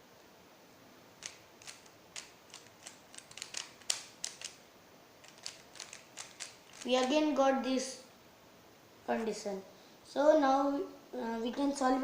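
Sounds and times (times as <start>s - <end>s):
rubik's cube turning clicks: 1.2s - 4.6s, 5.2s - 7.2s.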